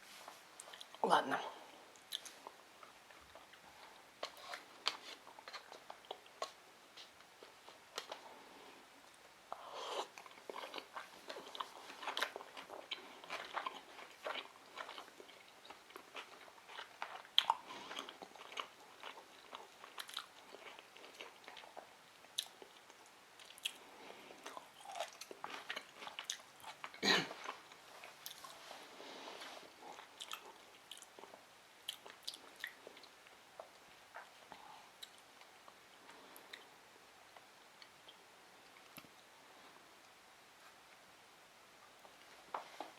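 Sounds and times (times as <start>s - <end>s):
chewing and biting food: 2.0s - 8.3s, 9.5s - 28.6s, 29.4s - 36.7s.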